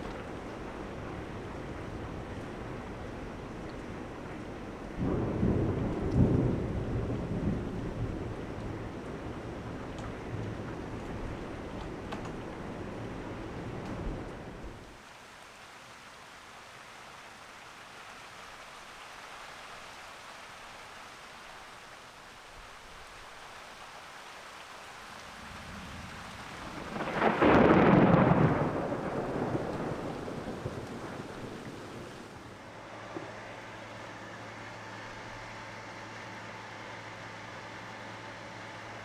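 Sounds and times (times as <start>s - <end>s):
thunder rumbling and cracking: 0.0s - 15.0s, 25.4s - 32.4s
steady rain falling: 0.0s - 39.0s.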